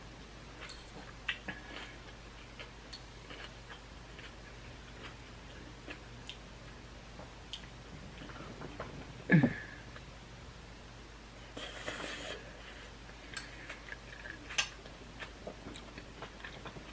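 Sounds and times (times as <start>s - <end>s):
person chewing crunchy food: 0.6s - 6.4s, 13.3s - 16.9s.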